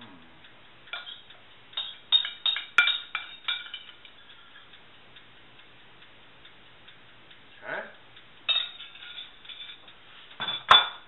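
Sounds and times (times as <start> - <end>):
metal utensil clinking on dish: 0.9 - 4.6, 8.5 - 11.0.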